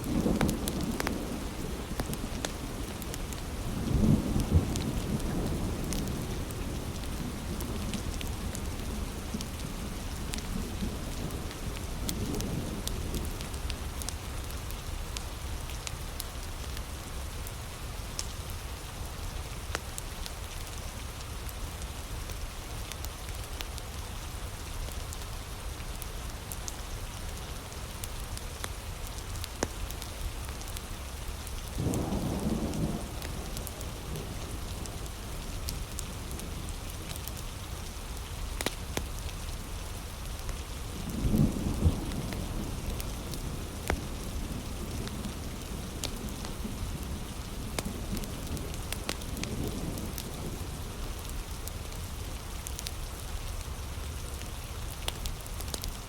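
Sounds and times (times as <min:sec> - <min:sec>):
thunder rumbling: 0:00.0 - 0:13.6, 0:31.8 - 0:37.0
wood fire crackling: 0:00.0 - 0:24.0, 0:24.9 - 0:56.0
heavy rain on leaves: 0:00.0 - 0:56.0.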